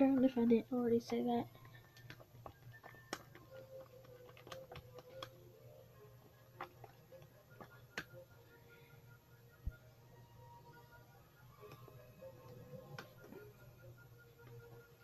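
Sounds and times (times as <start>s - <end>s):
slime stirring clicks and taps: 1.0s - 5.6s, 6.2s - 8.3s.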